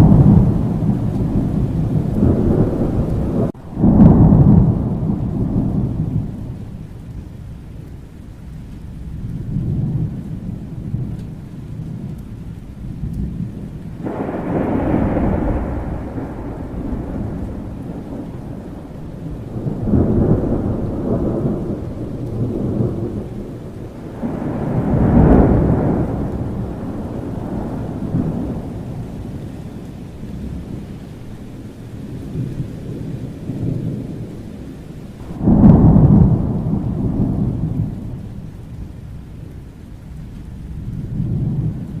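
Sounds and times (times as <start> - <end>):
loud thunder crack: 0.0 - 6.6, 13.2 - 29.8, 35.2 - 39.1
steady rain: 0.0 - 42.0
thunder rumbling: 0.0 - 42.0.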